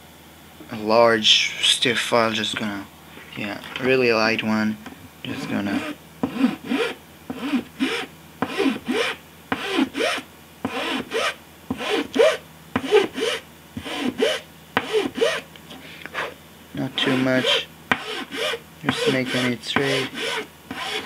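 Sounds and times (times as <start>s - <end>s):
file rasping on blade edge: 5.3s - 15.5s, 17.0s - 21.0s.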